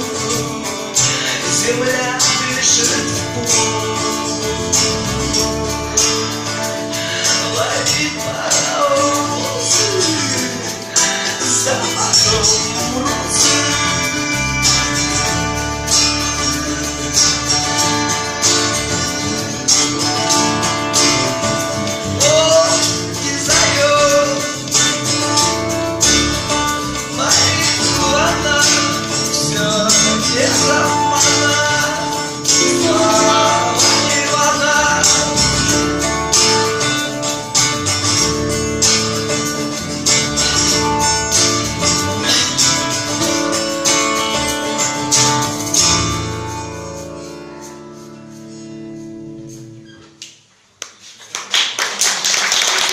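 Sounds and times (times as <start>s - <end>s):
person singing: 0.0s - 25.4s, 26.3s - 37.0s, 41.8s - 43.4s
strummed acoustic guitar: 0.0s - 50.2s.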